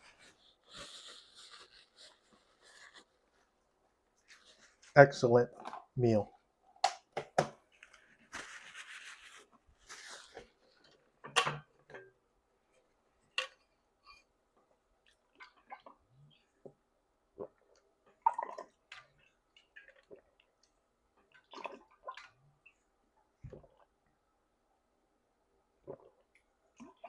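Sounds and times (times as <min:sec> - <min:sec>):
noisy slurp: 0:17.4 - 0:20.6, 0:21.3 - 0:22.4.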